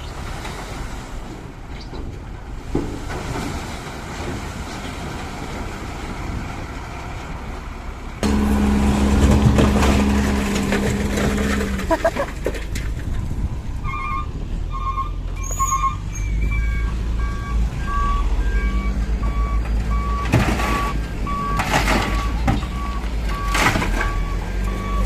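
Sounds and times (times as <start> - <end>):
diesel engine running: 6.5 - 15.4
truck reversing alarm beeping: 8.2 - 12.2, 13.8 - 25.0.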